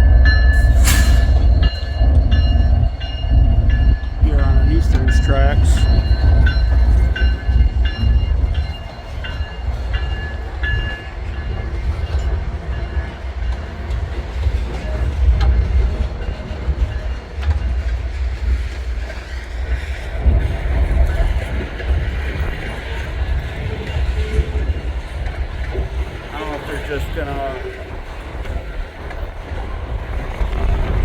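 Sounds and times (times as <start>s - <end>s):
wind rumble on microphone: 27.7s - 31.0s.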